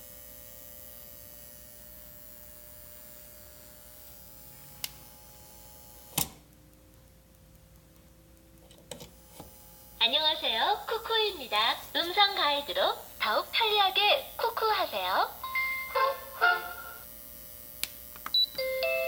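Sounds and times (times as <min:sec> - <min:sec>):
rice cooker high-pitched whine: 0:15.3 - 0:17.2.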